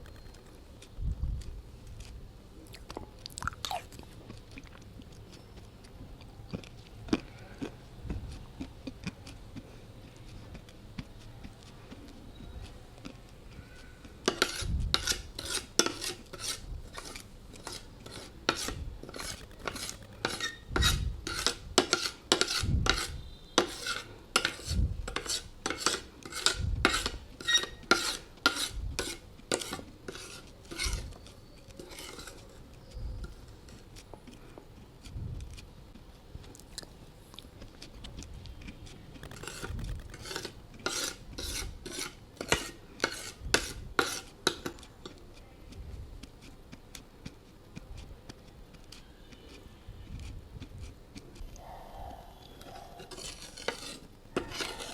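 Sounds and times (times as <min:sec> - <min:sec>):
brittle crunching chewing: 0:19.1 - 0:20.6, 0:33.9 - 0:40.8.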